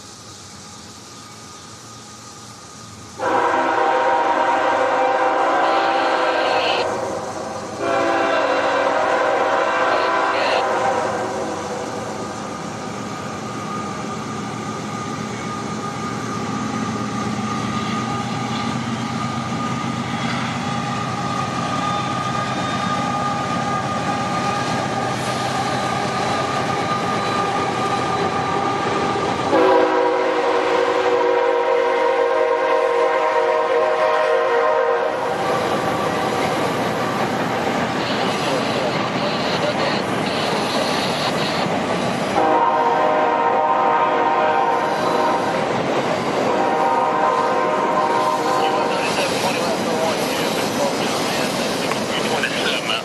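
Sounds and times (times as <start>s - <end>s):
train rumbling on rails: 0.0s - 53.0s
locomotive air horn blast: 3.2s - 11.9s, 29.5s - 35.3s, 42.4s - 45.6s, 46.4s - 49.5s.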